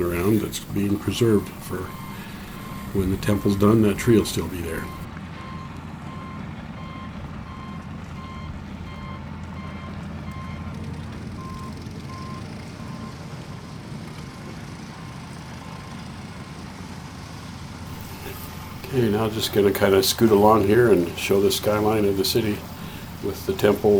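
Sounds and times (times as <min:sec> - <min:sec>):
reversing alarm beeps: 0:00.0 - 0:10.7, 0:11.4 - 0:13.2, 0:17.9 - 0:23.9
low rumble of machinery: 0:00.0 - 0:23.9.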